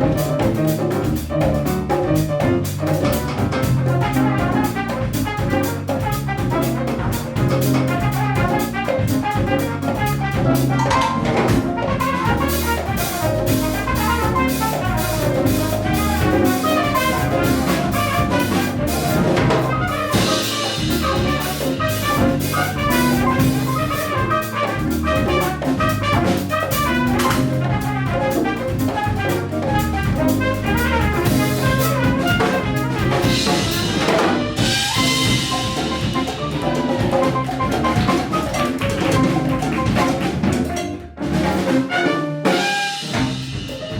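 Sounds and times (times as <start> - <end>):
bass: 0.0 - 43.9
drum kit: 0.0 - 43.9
piano: 0.0 - 43.9
trumpet: 2.2 - 40.6, 41.2 - 43.8
hand percussion: 10.6 - 41.0.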